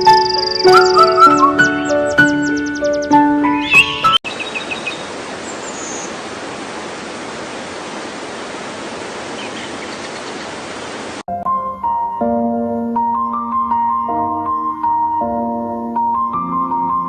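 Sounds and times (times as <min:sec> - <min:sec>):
piano music: 0:00.0 - 0:04.2, 0:11.3 - 0:17.0
faint bird chirps: 0:00.0 - 0:06.2, 0:09.3 - 0:10.6
rushing water: 0:03.4 - 0:11.3.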